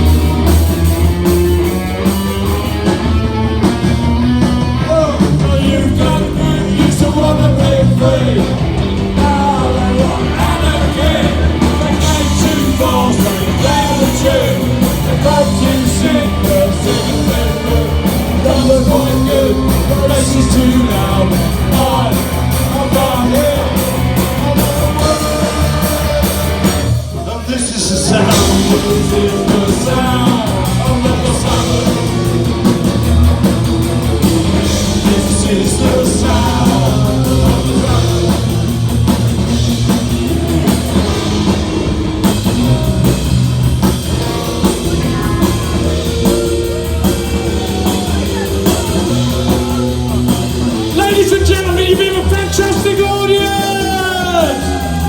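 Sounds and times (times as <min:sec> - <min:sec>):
drums: 0:00.0 - 0:55.0
electric guitars: 0:00.0 - 0:55.0
person singing: 0:04.8 - 0:32.8, 0:34.2 - 0:38.8, 0:44.6 - 0:55.0.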